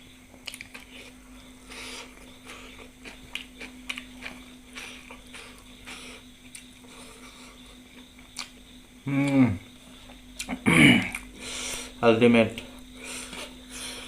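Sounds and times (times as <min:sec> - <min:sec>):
steady low hum: 0:00.0 - 0:14.0
person chewing food: 0:00.3 - 0:08.6, 0:09.2 - 0:11.4.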